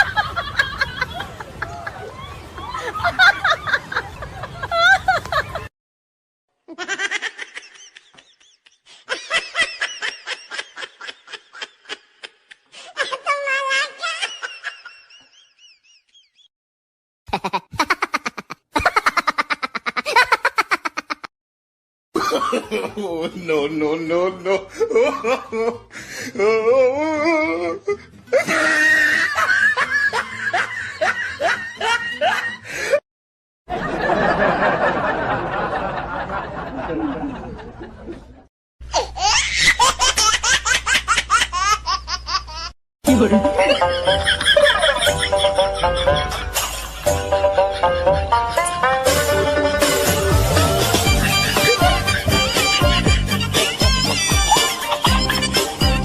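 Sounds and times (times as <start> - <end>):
person laughing: 6.7 - 15.3, 17.3 - 21.3, 22.2 - 23.3, 24.4 - 33.0, 39.0 - 56.0.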